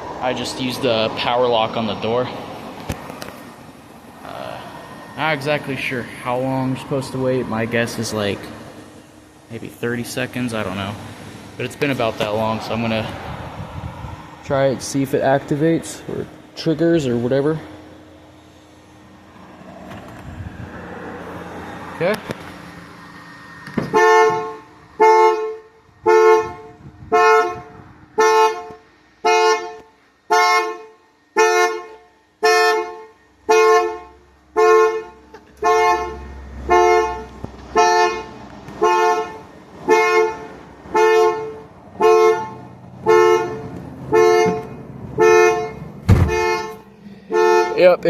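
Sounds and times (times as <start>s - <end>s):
car alarm horn honking: 23.8s - 48.0s.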